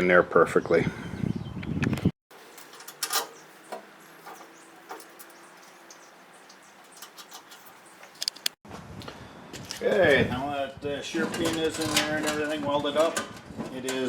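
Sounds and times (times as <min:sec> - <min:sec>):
small metal parts clicking: 0:02.5 - 0:03.4, 0:06.8 - 0:08.6.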